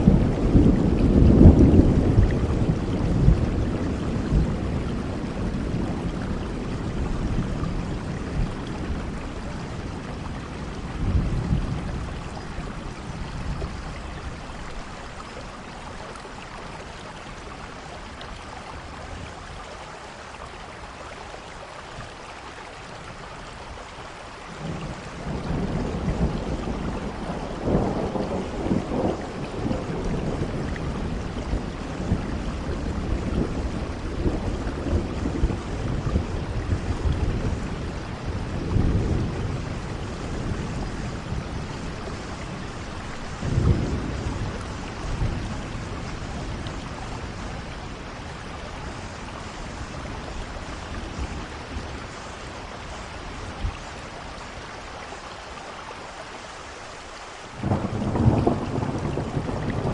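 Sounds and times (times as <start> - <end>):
rolling thunder: 0.0 - 15.5, 24.5 - 54.0, 57.5 - 59.9
steady rain: 0.0 - 59.9.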